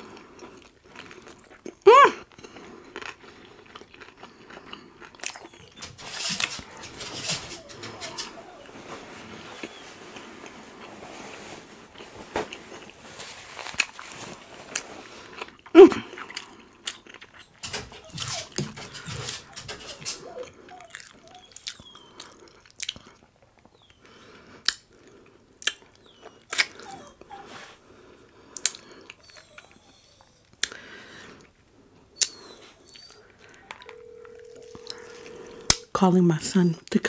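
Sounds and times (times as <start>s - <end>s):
chewing and biting chicken: 0.0s - 5.8s
faint high squeaks: 5.3s - 10.0s, 17.4s - 22.2s, 32.2s - 36.8s.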